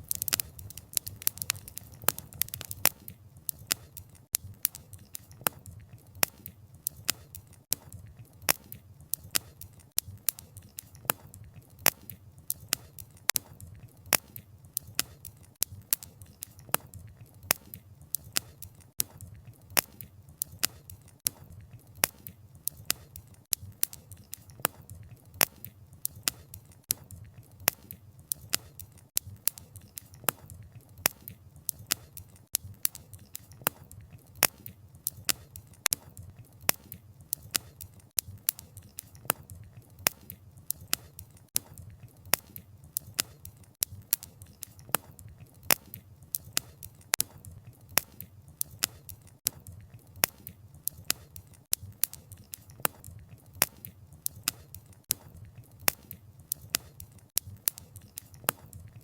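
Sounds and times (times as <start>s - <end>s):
low rumble of flames: 0.0s - 23.9s
logs popping and snapping: 0.0s - 49.6s.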